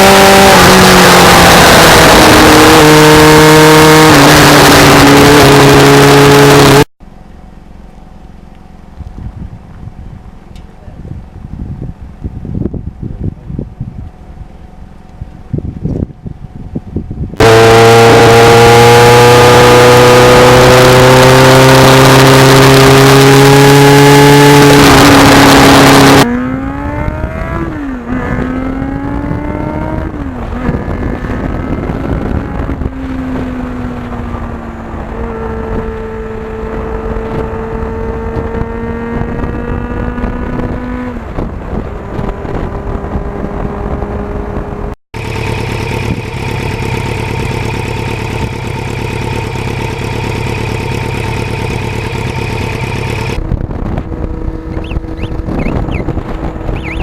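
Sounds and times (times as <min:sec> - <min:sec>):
motorcycle engine: 0:00.0 - 0:10.7, 0:13.8 - 0:57.0
wind rush on microphone: 0:08.9 - 0:45.0, 0:53.4 - 0:57.0.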